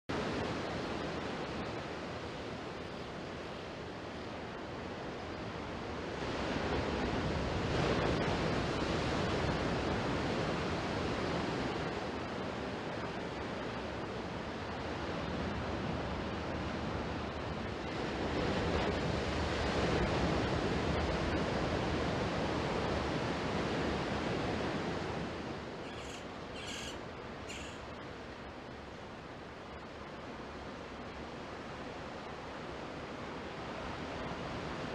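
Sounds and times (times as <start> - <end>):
short high chirps: 25.9 - 27.8.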